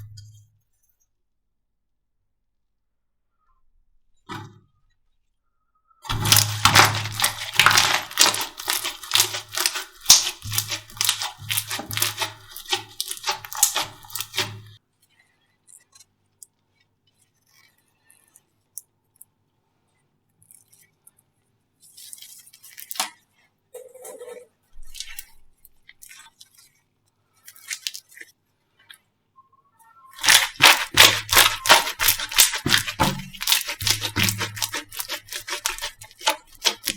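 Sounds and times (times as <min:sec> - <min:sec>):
slime wet crackling and popping: 0:06.0 - 0:14.8, 0:21.8 - 0:23.3, 0:24.8 - 0:29.1, 0:30.1 - 0:36.9.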